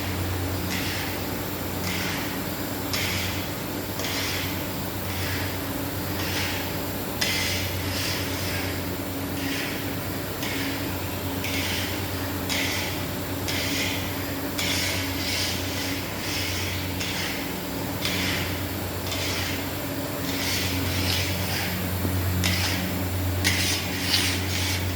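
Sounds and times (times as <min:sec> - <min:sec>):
machinery humming: 0:00.0 - 0:24.9
rasping scraping noise: 0:23.4 - 0:24.9.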